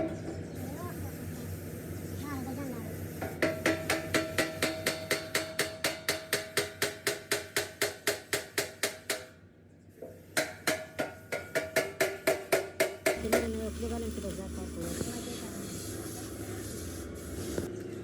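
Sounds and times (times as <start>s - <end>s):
hammer blows on metal: 3.2s - 9.3s.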